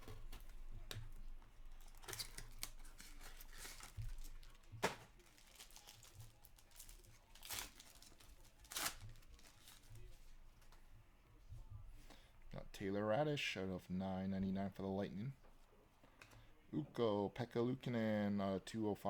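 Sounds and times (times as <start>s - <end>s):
wrapping tearing and crinkling: 0.0s - 10.7s.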